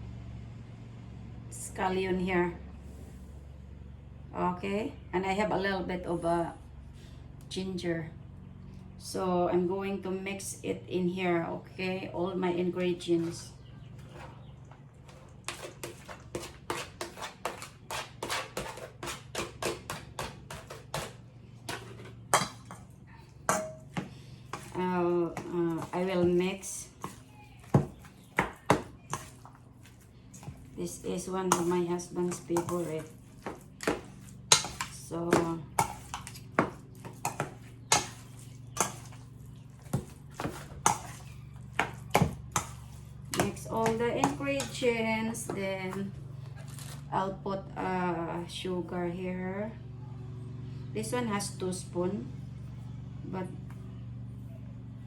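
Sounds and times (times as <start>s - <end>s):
ground meat squishing in bowl: 13.0s - 47.1s
faint low hum: 20.5s - 55.0s.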